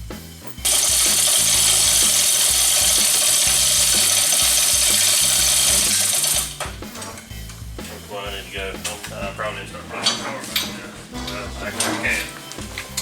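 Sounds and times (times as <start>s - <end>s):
impact wrench running: 0.0s - 7.9s.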